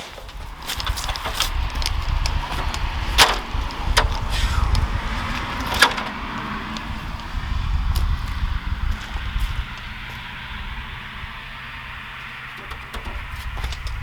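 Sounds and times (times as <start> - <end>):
equipment knocks and clatters: 0.0 - 6.9, 12.2 - 14.0
wind buffeting microphone: 0.0 - 14.0.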